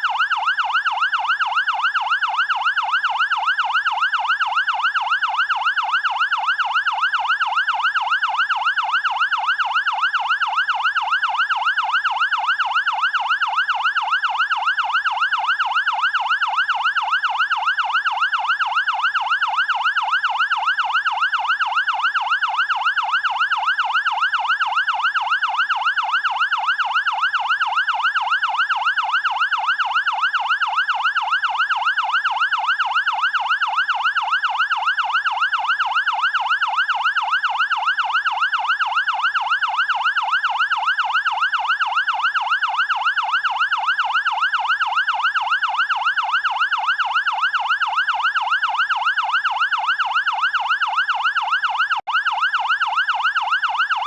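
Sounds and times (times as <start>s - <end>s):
fire engine siren yelping: 0.0s - 54.0s.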